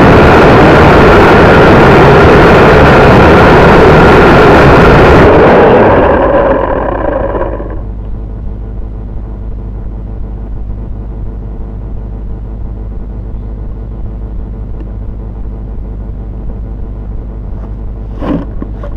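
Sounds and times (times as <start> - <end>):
quadcopter motors whining: 0.0 - 7.9
wind rumble on microphone: 0.0 - 7.9.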